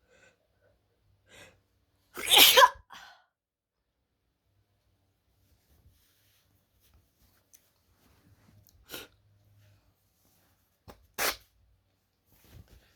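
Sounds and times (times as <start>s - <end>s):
wet sneezes: 2.2s - 2.8s.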